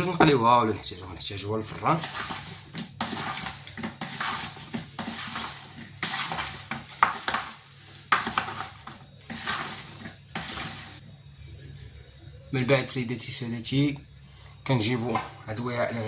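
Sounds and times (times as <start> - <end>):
utensil scraping a bowl: 1.7 - 11.0.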